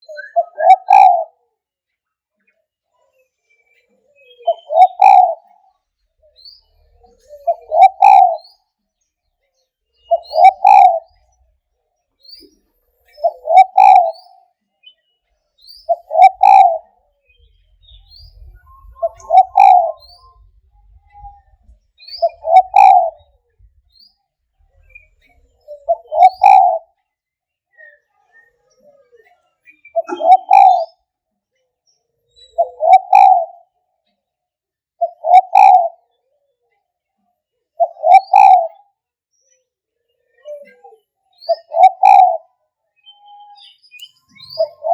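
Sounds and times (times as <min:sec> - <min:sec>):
dove cooing: 0:00.4 - 0:01.3, 0:04.5 - 0:05.5, 0:07.4 - 0:08.5, 0:10.1 - 0:11.1, 0:13.2 - 0:14.3, 0:15.9 - 0:16.9, 0:17.8 - 0:23.4, 0:25.7 - 0:26.9, 0:30.0 - 0:30.9, 0:32.6 - 0:33.6, 0:35.0 - 0:36.0, 0:37.8 - 0:38.8, 0:41.6 - 0:42.4, 0:44.6 - 0:44.9
faint high chirps: 0:02.4 - 0:27.0.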